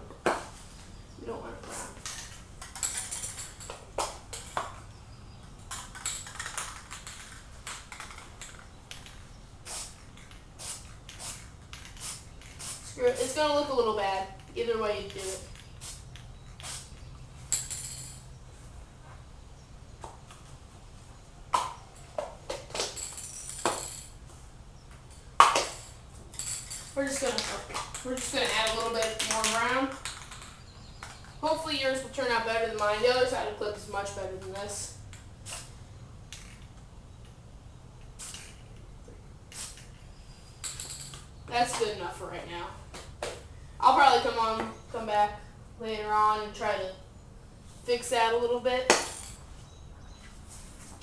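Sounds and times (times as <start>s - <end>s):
spray can mixing ball clacking: 5.7s - 13.4s, 25.4s - 31.2s, 38.2s - 38.6s, 39.5s - 40.0s
spray paint can hissing: 9.6s - 13.5s, 15.0s - 17.1s, 35.4s - 35.7s, 38.2s - 38.6s, 39.5s - 40.0s.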